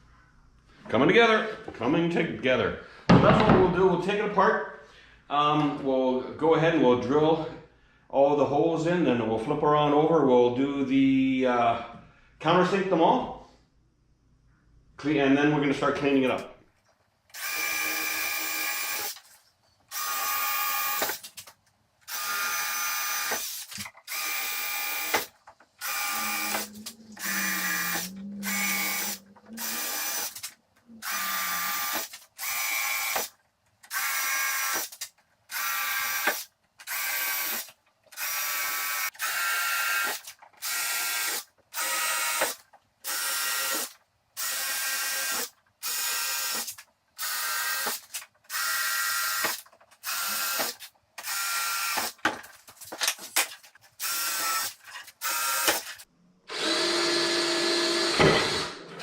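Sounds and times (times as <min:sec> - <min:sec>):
power drill boring through plywood: 0:17.4 - 0:19.2, 0:19.9 - 0:21.2, 0:22.1 - 0:30.4, 0:31.0 - 0:33.3, 0:35.5 - 0:52.2, 0:54.0 - 0:59.0.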